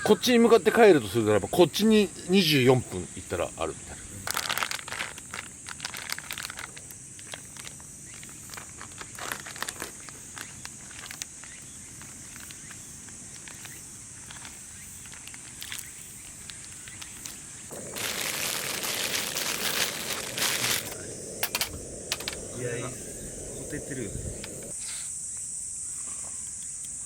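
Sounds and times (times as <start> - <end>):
night insects chirring: 0.0 - 27.0
faint clicks and crackles: 4.2 - 24.7.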